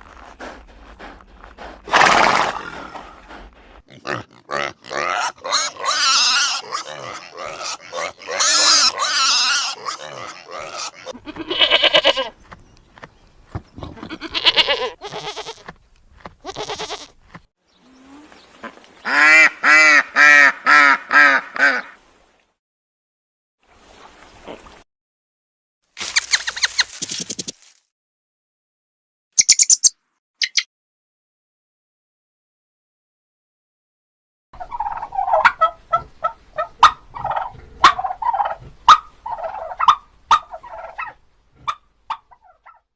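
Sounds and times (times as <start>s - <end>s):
goat bleating: 4.1s - 12.4s, 13.9s - 15.7s, 16.4s - 17.2s
duck quacking: 19.1s - 21.9s
turkey gobbling: 34.6s - 42.8s.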